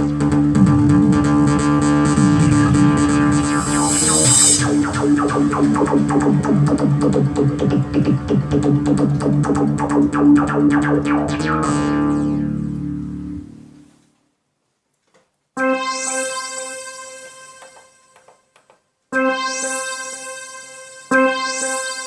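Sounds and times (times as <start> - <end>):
fast synthesizer notes: 0.0 - 13.7, 19.1 - 22.0
held synthesizer chord: 0.0 - 13.8, 15.6 - 18.4, 19.1 - 22.0
low held synthesizer tone: 0.0 - 13.8.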